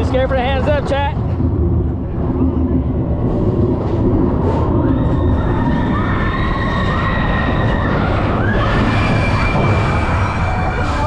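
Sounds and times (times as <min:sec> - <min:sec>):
roller coaster rumbling on track: 0:00.0 - 0:11.0
high squealing whines: 0:02.3 - 0:11.0.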